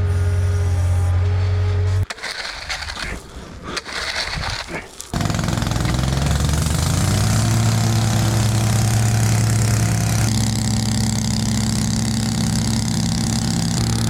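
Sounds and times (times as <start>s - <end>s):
small gasoline engine idling: 2.1s - 3.1s, 3.8s - 14.0s.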